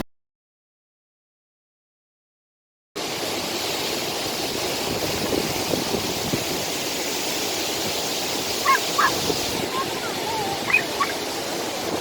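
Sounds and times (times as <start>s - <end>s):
waterfall rushing: 3.0s - 12.0s.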